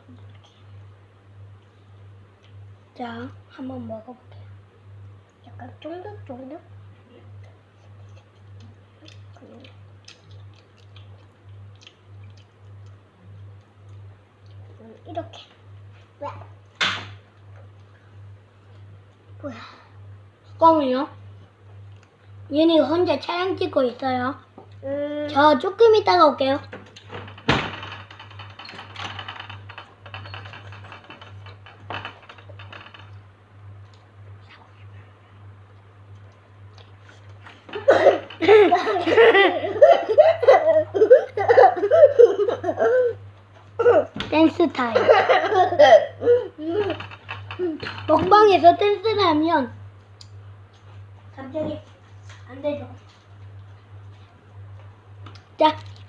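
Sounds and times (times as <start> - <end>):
steady low hum: 0.0 - 56.0
mouth chewing gummy: 7.9 - 13.6.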